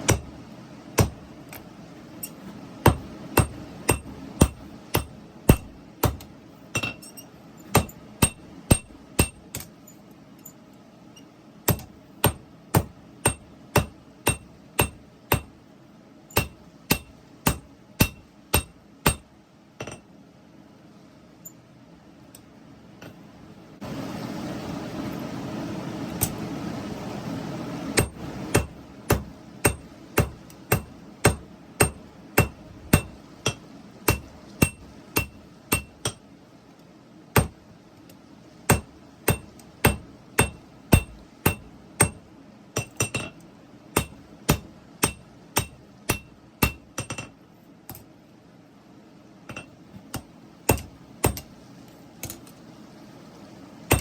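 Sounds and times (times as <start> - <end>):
hammer striking steel on anvil: 0.0 - 0.3, 1.0 - 1.2, 2.2 - 9.7, 11.7 - 15.5, 16.3 - 20.1, 28.0 - 36.3, 37.4 - 37.6, 38.7 - 42.2, 42.8 - 43.4, 44.0 - 48.1, 49.5 - 51.5.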